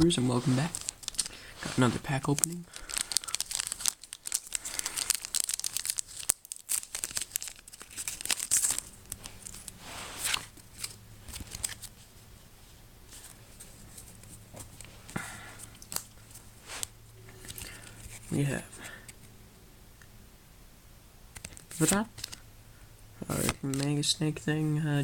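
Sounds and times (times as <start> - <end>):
foil pack tearing and crinkling: 0.6 - 11.9.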